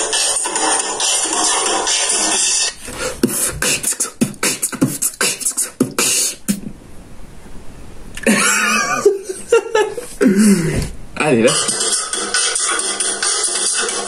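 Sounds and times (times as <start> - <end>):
person making mouth sound effects: 3.0 - 6.7, 11.5 - 14.0.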